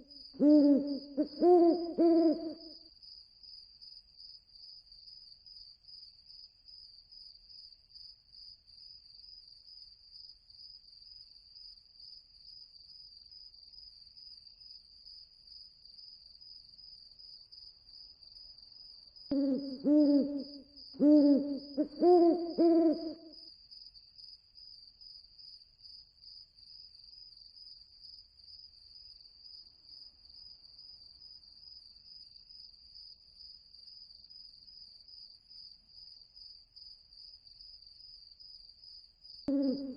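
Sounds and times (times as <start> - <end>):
crickets trilling: 0.0 - 2.7, 18.6 - 23.3, 39.3 - 39.9
owl hooting: 0.0 - 2.7, 19.3 - 23.3, 39.5 - 39.9.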